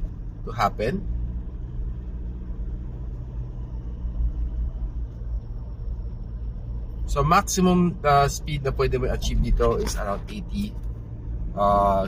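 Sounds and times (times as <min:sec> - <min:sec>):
car interior road rumble: 0:00.0 - 0:12.0.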